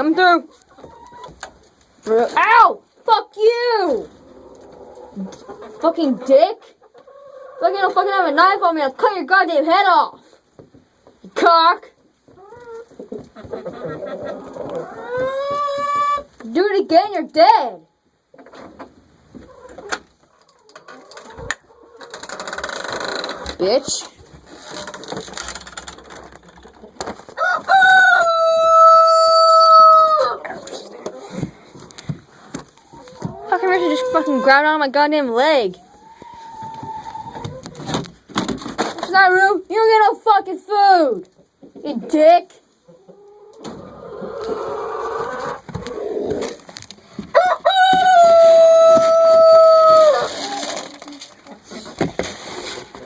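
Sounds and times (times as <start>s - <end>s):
chickens clucking: 0.0s - 16.6s, 18.3s - 40.0s, 41.2s - 53.0s
rooster crowing: 27.4s - 30.4s, 47.3s - 50.3s.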